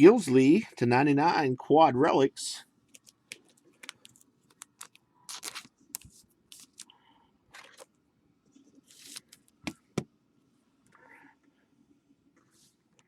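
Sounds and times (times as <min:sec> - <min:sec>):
plastic card sleeves rustling: 0:02.9 - 0:06.9, 0:08.8 - 0:09.5.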